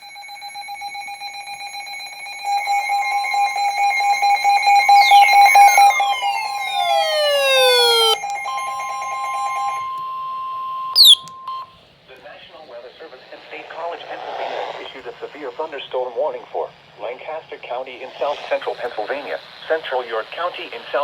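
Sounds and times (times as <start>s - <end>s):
pulsing electronic alarm: 0.0s - 11.8s
falling electronic tones: 4.3s - 8.3s, 11.0s - 11.3s
steady electronic tone: 4.4s - 8.2s, 12.6s - 21.0s
loud falling chirp: 4.9s - 8.2s, 11.0s - 11.3s.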